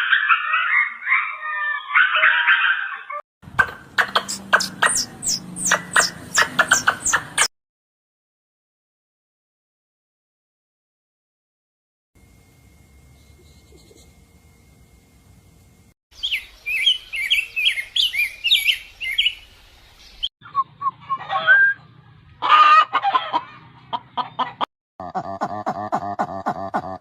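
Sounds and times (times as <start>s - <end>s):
fowl calls: 0.0s - 7.5s, 21.0s - 21.8s, 22.4s - 24.7s
pulsing animal call: 0.0s - 7.5s
small birds chirping rapidly: 0.1s - 7.5s, 16.1s - 22.2s.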